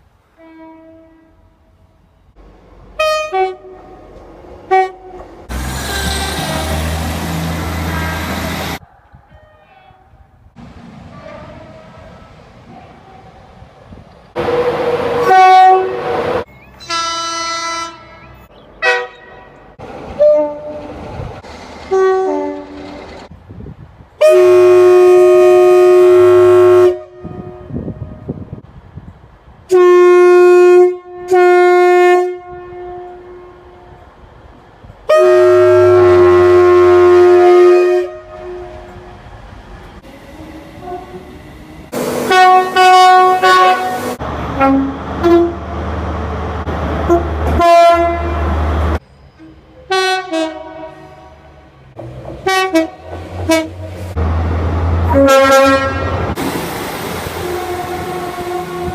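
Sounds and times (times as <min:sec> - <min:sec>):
train horn blasts: 0:00.4 - 0:01.9, 0:03.0 - 0:04.0, 0:04.7 - 0:05.3, 0:07.7 - 0:08.8, 0:14.4 - 0:20.9, 0:21.9 - 0:22.7, 0:24.2 - 0:28.4, 0:29.7 - 0:34.0, 0:35.1 - 0:39.2, 0:40.0 - 0:45.7, 0:47.1 - 0:48.6, 0:49.9 - 0:51.7, 0:52.4 - 0:53.9, 0:55.1 - 0:56.4, 0:57.4 - 0:58.9.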